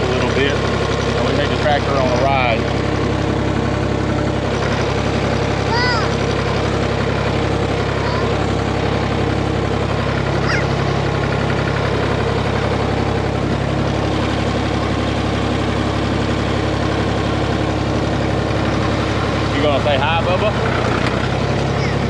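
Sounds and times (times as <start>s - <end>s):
tractor engine running: 0.0s - 22.0s.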